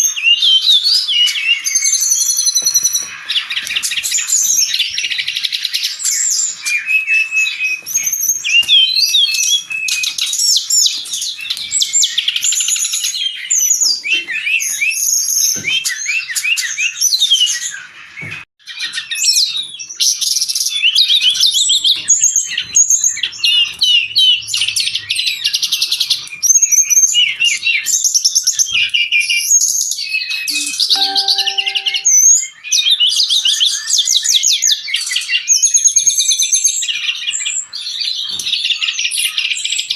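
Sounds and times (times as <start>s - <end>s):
bird singing warbling song: 30.5s - 32.4s.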